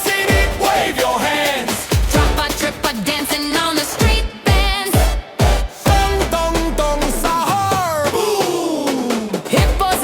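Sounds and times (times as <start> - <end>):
upbeat pop music with singing: 0.0 - 10.0
deep electronic kick drum: 0.3 - 0.8, 1.9 - 2.6, 4.0 - 8.4, 9.5 - 10.0.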